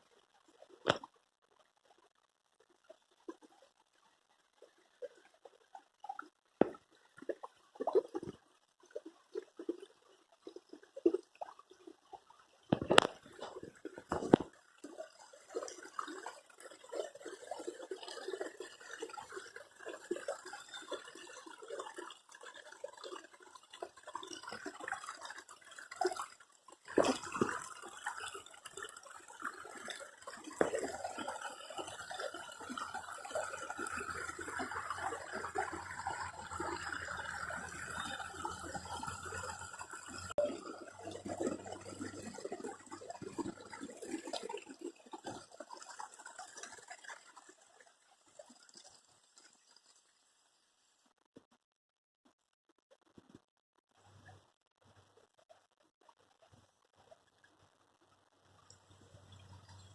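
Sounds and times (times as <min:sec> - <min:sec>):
water running and trickling: 0:04.6 - 0:50.6.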